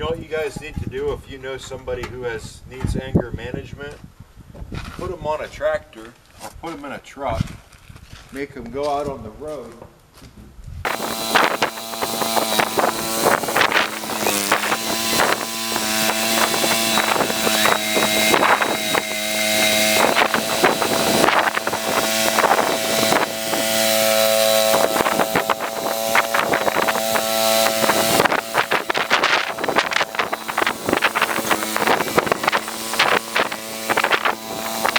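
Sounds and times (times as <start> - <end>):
snow-clearing machine engine running: 10.9 - 34.9.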